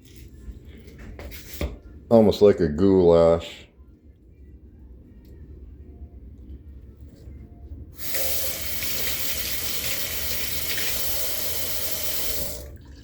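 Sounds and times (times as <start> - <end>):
tap water running into sink: 8.0 - 13.0.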